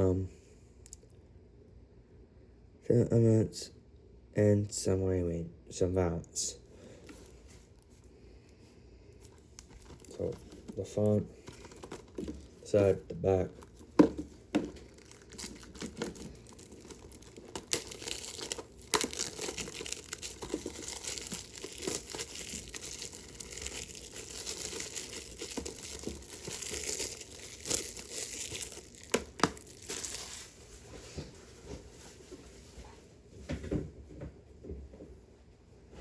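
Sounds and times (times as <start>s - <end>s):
plastic wrap crinkling and tearing: 9.2s - 30.8s.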